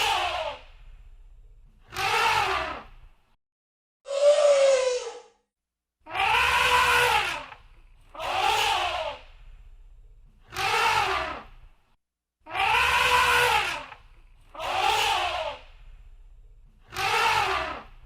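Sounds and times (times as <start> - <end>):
elephant trumpeting: 6.1 - 7.5, 12.5 - 14.0, 16.9 - 17.9.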